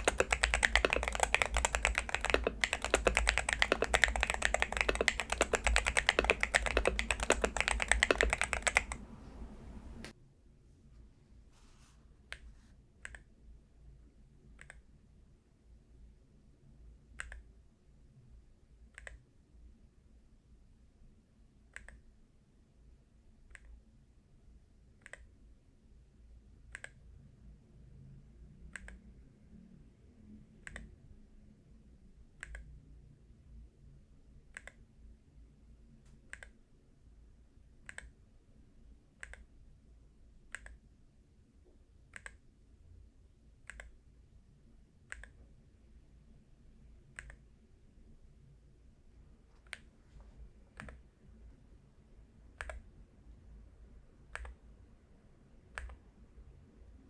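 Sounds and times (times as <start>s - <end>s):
keyboard key clicks: 0.0s - 10.1s.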